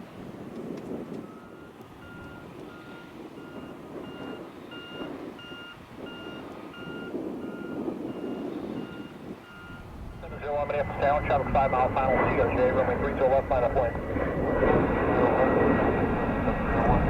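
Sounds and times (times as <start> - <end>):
reversing alarm beeping: 1.3 - 9.9
low background rumble: 9.8 - 17.0.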